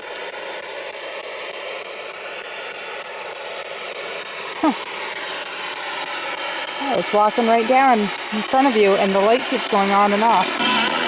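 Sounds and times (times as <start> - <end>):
outdoor background hiss: 0.0 - 11.0
short voice sound: 4.6 - 4.8.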